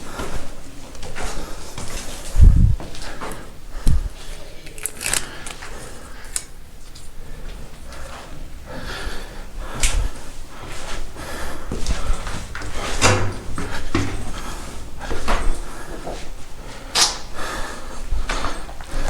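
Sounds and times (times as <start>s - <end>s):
footsteps with knocks and scuffs: 0.0s - 4.6s, 9.6s - 17.3s, 18.0s - 19.0s.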